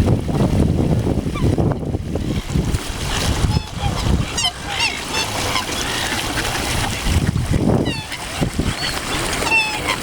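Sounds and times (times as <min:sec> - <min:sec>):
birds squawking: 0:03.5 - 0:06.7, 0:07.8 - 0:10.0.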